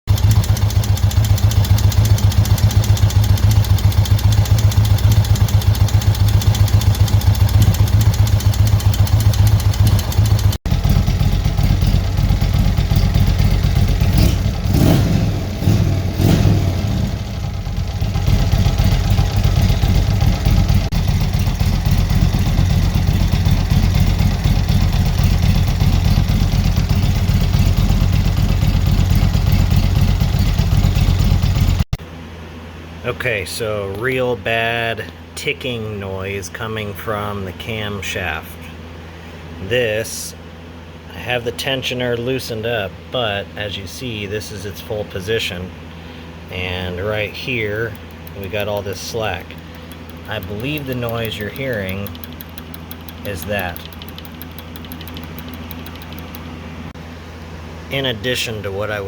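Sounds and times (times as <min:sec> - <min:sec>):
engine ticking: 0:00.1 - 0:31.9, 0:47.2 - 0:56.5
motorcycle engine idling: 0:00.1 - 0:31.9, 0:45.8 - 0:56.9.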